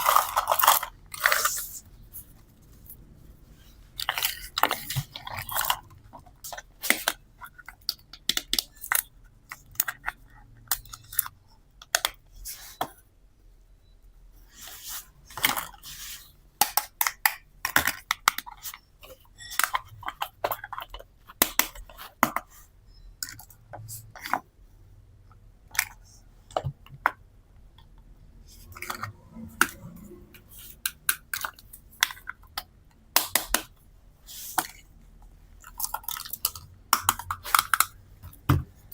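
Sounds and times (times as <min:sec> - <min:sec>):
plastic toy pieces clicking: 0:35.7 - 0:38.0.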